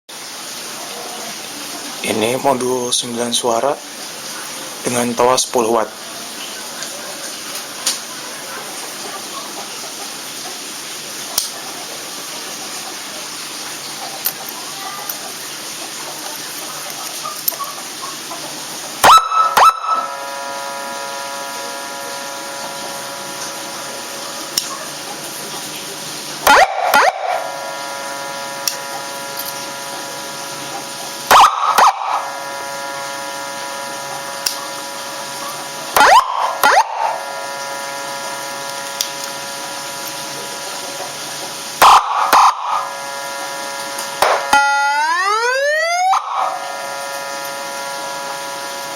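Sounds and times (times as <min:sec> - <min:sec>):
buzzy horn-like tone: 0:19.0 - 0:24.6, 0:26.4 - 0:40.8, 0:41.8 - 0:48.9
electronic siren yelp: 0:19.0 - 0:25.0, 0:26.4 - 0:40.6, 0:41.8 - 0:48.9.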